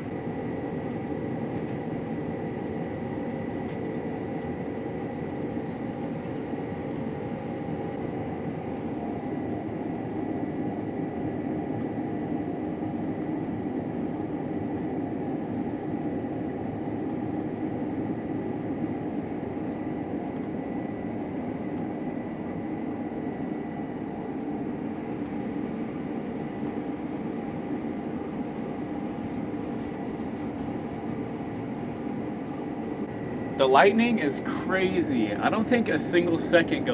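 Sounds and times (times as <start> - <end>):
harvesting machine drone: 0.0 - 36.9
thin high whine: 22.3 - 36.9.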